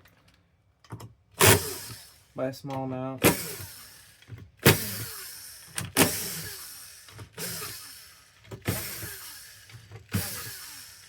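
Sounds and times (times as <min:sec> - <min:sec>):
electric screwdriver whirring: 0:01.4 - 0:02.2, 0:03.2 - 0:11.0.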